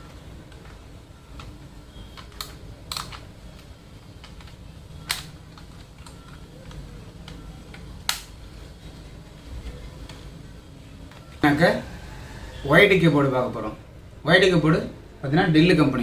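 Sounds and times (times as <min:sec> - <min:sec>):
low steady hum: 0:00.0 - 0:16.0
plastic keyboard clicks: 0:00.5 - 0:08.3.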